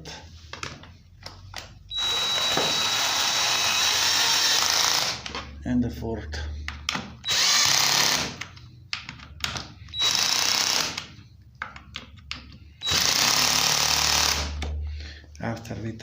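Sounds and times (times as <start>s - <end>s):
cordless drill driving screws: 1.9s - 5.4s, 7.2s - 8.5s, 9.5s - 11.1s, 12.8s - 14.6s.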